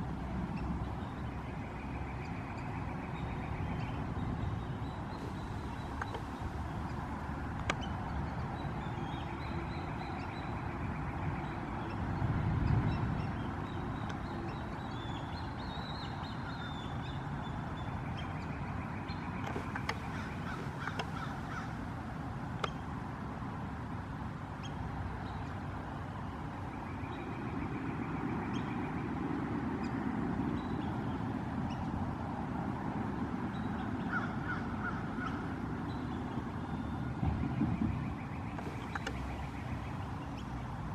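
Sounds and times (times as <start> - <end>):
low background rumble: 5.1 - 9.8
ducks whistling and chattering: 19.5 - 21.9.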